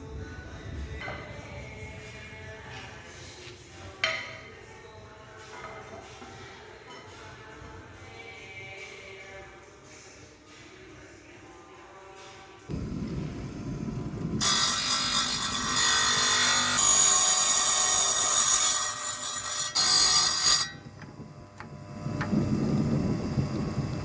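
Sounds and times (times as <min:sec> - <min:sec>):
power tool motor running: 0:12.7 - 0:24.0
blade grinding through tile: 0:14.3 - 0:23.0.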